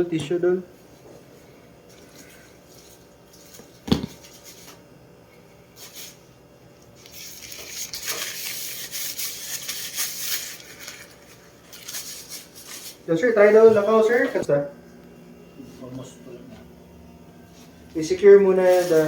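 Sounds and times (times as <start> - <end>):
tissue paper rustling: 7.0 - 13.1, 18.5 - 19.0.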